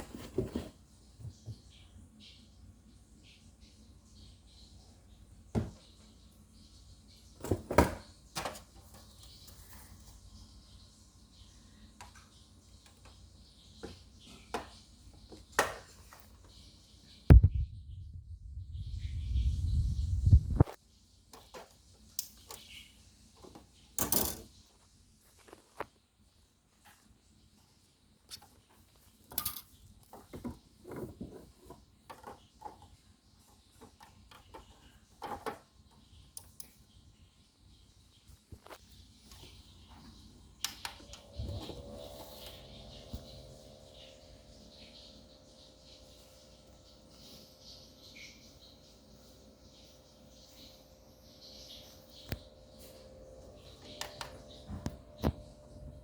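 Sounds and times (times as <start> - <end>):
fan air buffeting microphone: 17.3 - 20.7, 40.4 - 44.9.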